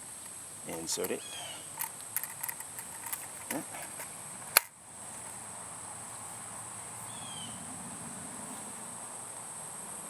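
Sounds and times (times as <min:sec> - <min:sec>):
crickets chirring: 0:00.0 - 0:10.0
gun barrel snapping shut: 0:00.7 - 0:04.8.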